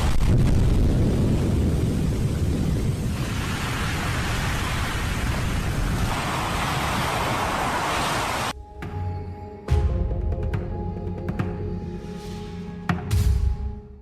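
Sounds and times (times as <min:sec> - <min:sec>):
volcano deep rumble: 0:00.0 - 0:08.5
wind on microphone: 0:00.0 - 0:08.5
rushing roar: 0:03.0 - 0:08.5.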